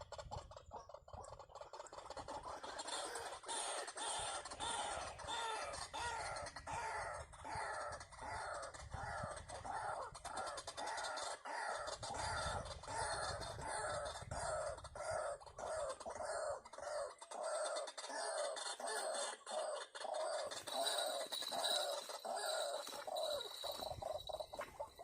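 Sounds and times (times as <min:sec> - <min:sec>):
waterhen calling harsh notes: 0:20.4 - 0:25.0.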